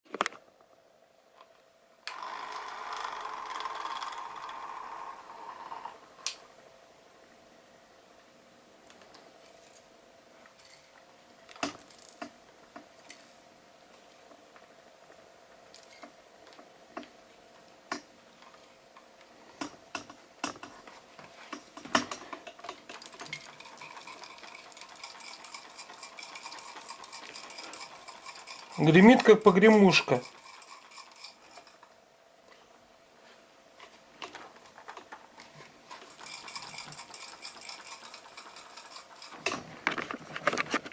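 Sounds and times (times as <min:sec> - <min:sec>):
loose part rattling inside device: 0:22.9 - 0:31.8, 0:35.9 - 0:40.9.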